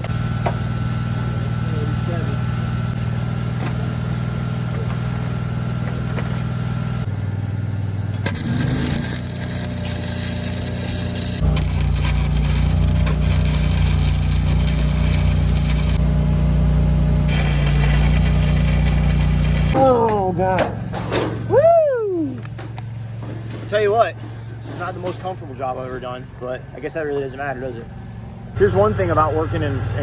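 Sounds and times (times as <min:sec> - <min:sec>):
welding arc crackling: 0:00.0 - 0:07.1, 0:08.2 - 0:16.0, 0:17.2 - 0:19.8
welding machine engine running: 0:00.0 - 0:19.9.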